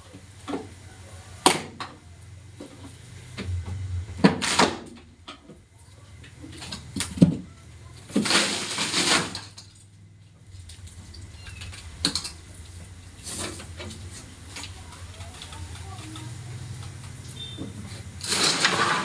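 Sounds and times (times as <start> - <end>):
low steady hum: 0.0 - 18.3
scraping rasp of panels: 18.2 - 19.0.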